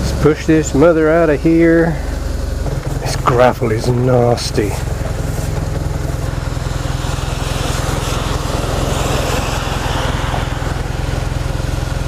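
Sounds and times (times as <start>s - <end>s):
motorcycle engine running: 0.0s - 12.0s
steady hiss: 4.3s - 12.0s.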